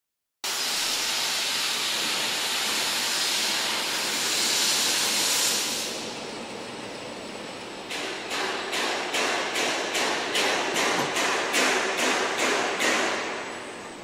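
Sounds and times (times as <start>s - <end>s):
laser cutter gas hiss: 0.5s - 6.2s.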